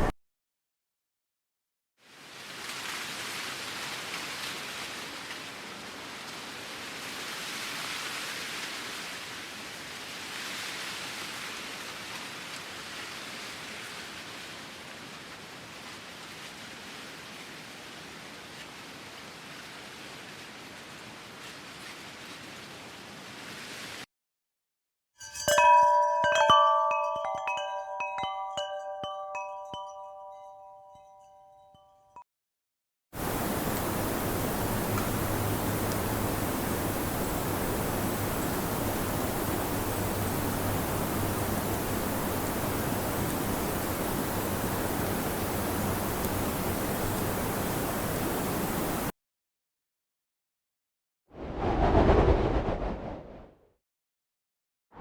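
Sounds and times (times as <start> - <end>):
wind chimes ringing: 25.2 - 32.2
wind blowing: 33.2 - 49.1, 51.4 - 53.5.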